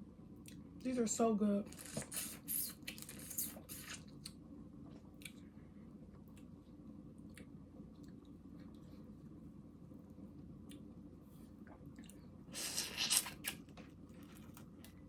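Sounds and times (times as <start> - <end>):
faint low hum: 0.0 - 15.0
chewing shrimp: 1.7 - 5.5, 11.6 - 15.0.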